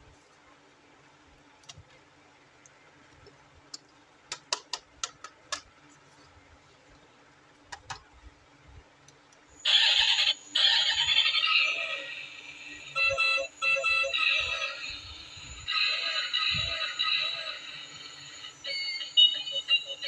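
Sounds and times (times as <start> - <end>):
electronic toy sound effect: 9.6 - 20.0.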